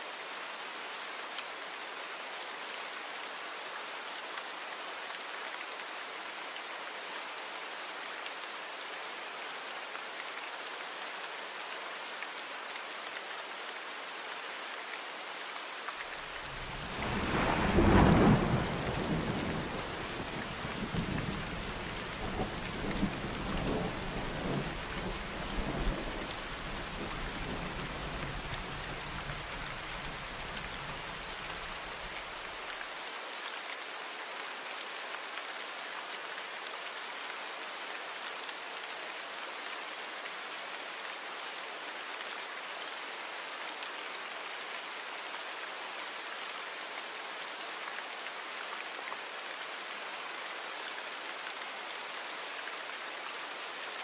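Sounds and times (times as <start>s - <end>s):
steady rain hiss: 0.0s - 54.0s
thunder rumbling: 16.7s - 19.8s.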